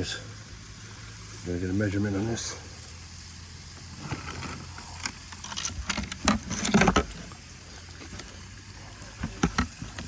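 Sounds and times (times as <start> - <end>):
fish handling knocks and clicks: 9.0 - 10.0.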